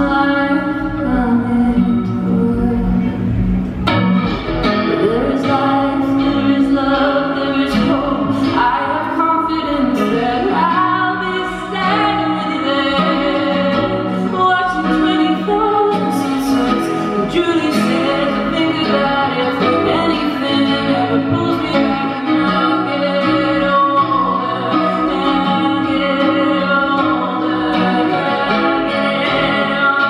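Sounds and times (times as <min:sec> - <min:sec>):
person singing: 0:00.0 - 0:03.6, 0:04.6 - 0:30.0
guitar: 0:00.0 - 0:30.0
live band playing: 0:00.0 - 0:30.0.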